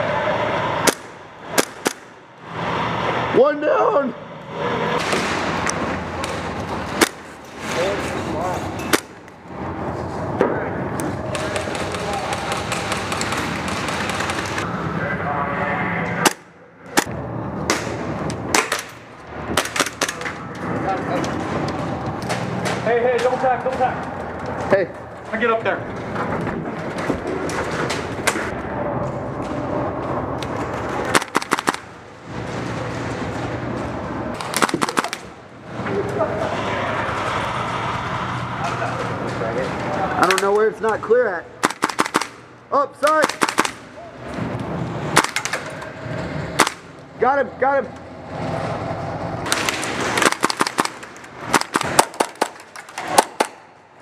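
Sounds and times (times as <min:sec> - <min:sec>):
airsoft gun shots: 0:00.8 - 0:02.2, 0:31.1 - 0:31.8, 0:34.4 - 0:35.3, 0:41.6 - 0:42.4, 0:43.1 - 0:43.8, 0:46.6 - 0:46.8, 0:49.5 - 0:53.6.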